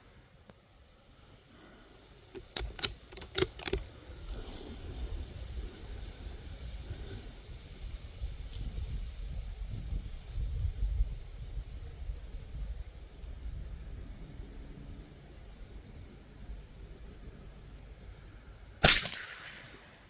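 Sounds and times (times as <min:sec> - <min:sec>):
high insect drone: 0:00.0 - 0:19.8
rifle shot: 0:02.4 - 0:03.8, 0:18.8 - 0:20.0
wind rumbling on the microphone: 0:03.8 - 0:16.1.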